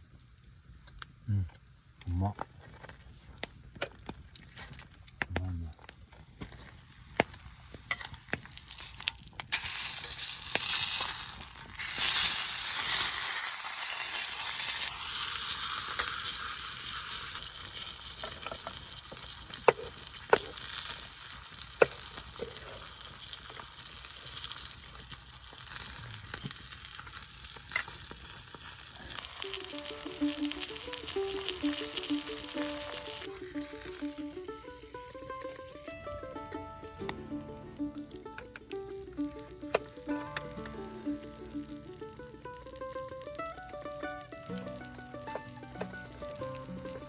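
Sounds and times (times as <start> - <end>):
food sizzling in a pan: 6.6 - 47.0
music: 29.2 - 47.0.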